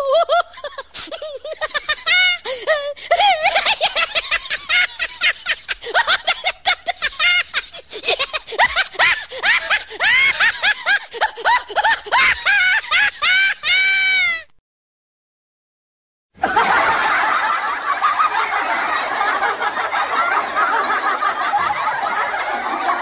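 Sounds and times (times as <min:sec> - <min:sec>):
high-pitched laughing sound effect: 0:00.0 - 0:14.4.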